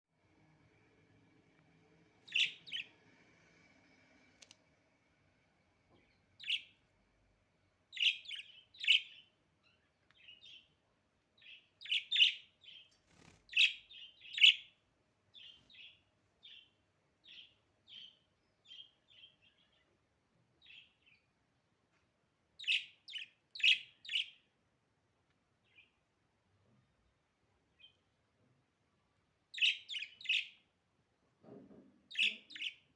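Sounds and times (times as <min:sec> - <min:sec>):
budgerigar chirping: 0:02.3 - 0:02.9, 0:08.0 - 0:09.2, 0:11.4 - 0:12.5, 0:22.6 - 0:24.4, 0:29.6 - 0:30.6, 0:32.1 - 0:32.8.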